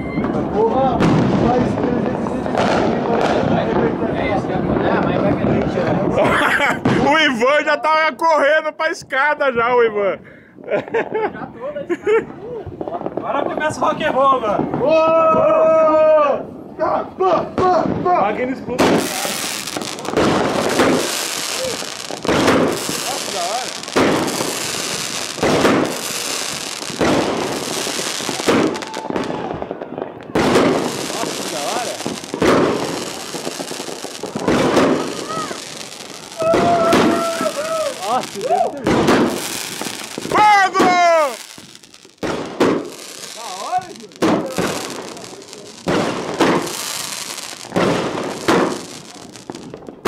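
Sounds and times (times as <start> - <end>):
firework bangs: 0.0 - 7.5, 12.3 - 15.8, 16.4 - 50.0
firework hissing rush: 18.8 - 29.3, 30.4 - 49.8.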